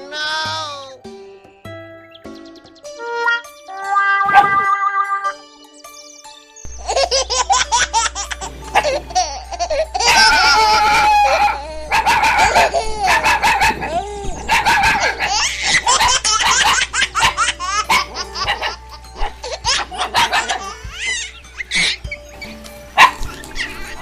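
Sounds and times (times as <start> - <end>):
high-pitched laughter: 6.8 - 22.2
dog vocalizing: 10.0 - 20.8.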